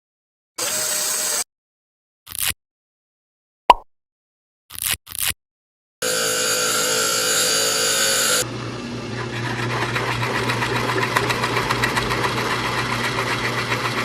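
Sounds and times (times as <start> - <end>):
power tool whining: 0.6 - 1.5, 6.0 - 14.0
fast dense rasping: 9.5 - 14.0.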